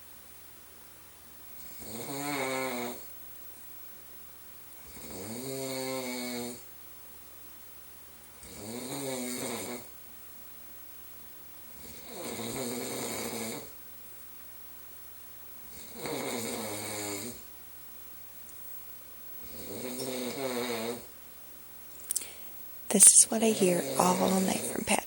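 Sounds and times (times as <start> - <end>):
man snoring: 1.6 - 3.1, 4.9 - 6.6, 8.4 - 9.9, 11.8 - 13.8, 15.7 - 17.5, 19.4 - 21.1, 23.8 - 24.2
quiet breathing: 21.9 - 25.0.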